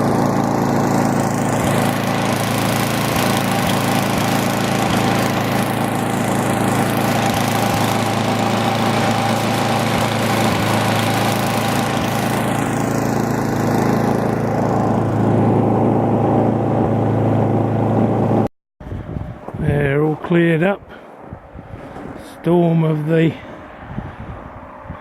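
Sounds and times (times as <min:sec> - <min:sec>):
small petrol engine running: 0:00.0 - 0:18.5.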